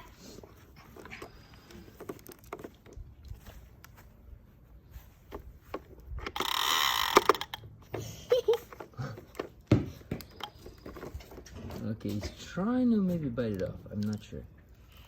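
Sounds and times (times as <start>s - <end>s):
toy lawn mower clicking and rattling: 0.0s - 3.1s, 5.6s - 9.6s, 10.3s - 14.4s.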